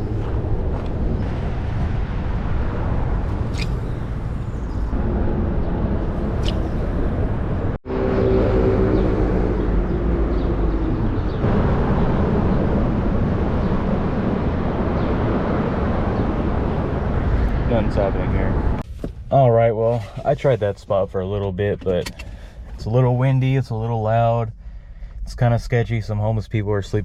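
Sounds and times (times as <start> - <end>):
passing vehicle humming drone: 0.0 - 18.8
freeway traffic roar: 0.0 - 19.3.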